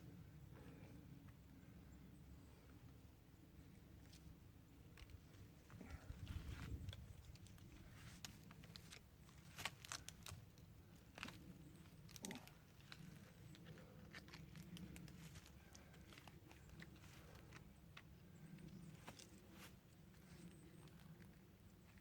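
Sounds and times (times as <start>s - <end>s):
crackles and rustles in leaf litter: 6.5s - 10.4s.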